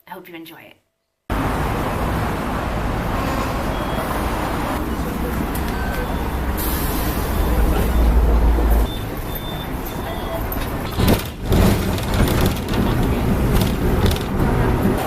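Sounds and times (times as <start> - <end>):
heavy vehicles rumbling: 1.3 - 15.0
short beeps: 5.6 - 10.6.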